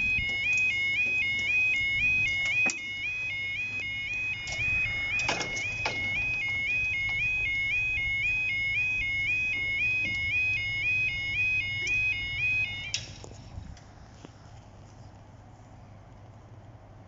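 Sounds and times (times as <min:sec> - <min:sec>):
level crossing alarm warbling: 0:00.0 - 0:13.5.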